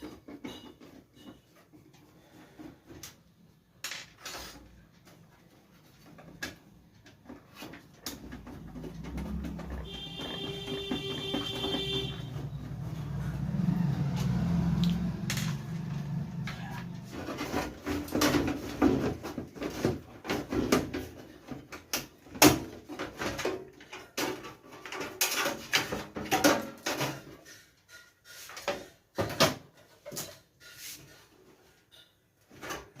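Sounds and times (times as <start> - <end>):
computer parts clicking and knocking: 5.9 - 12.6.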